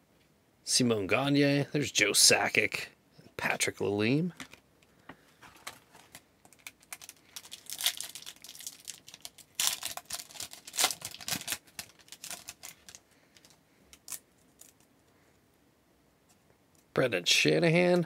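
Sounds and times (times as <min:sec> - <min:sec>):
cards rustling: 0:05.2 - 0:14.9
wrapper tearing and crinkling: 0:05.5 - 0:14.9.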